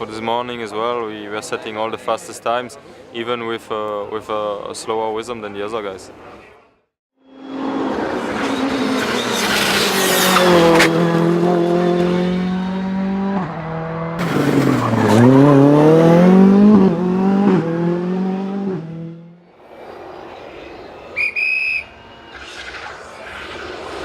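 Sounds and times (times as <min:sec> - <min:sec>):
rally car engine revving: 0:07.5 - 0:19.4.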